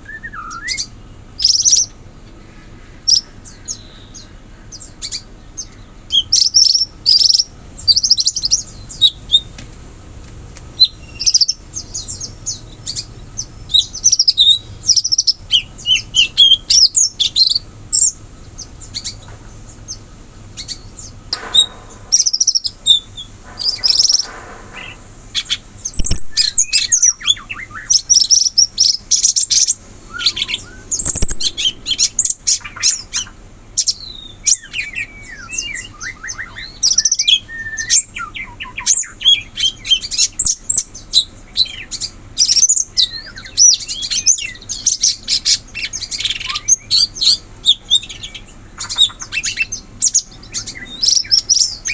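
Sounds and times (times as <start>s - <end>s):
songbird singing: 0.0s - 51.9s.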